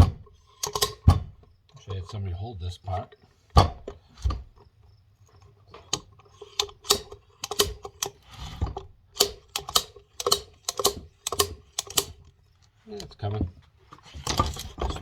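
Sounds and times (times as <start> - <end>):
wrench clicking and clanking: 0.4 - 1.2, 5.8 - 8.4, 9.2 - 12.3.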